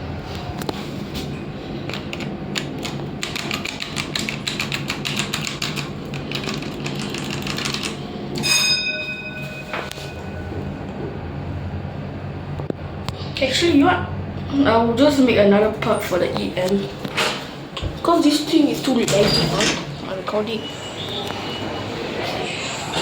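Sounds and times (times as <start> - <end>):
rapid clatter of clicks: 1.9 - 8.0
lift humming: 7.9 - 23.0
electronic lift chime: 8.4 - 11.6.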